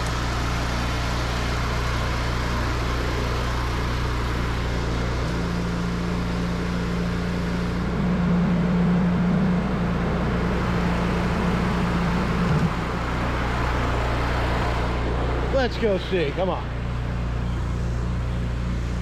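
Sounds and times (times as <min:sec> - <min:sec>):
pressure washer engine running: 0:00.0 - 0:19.0.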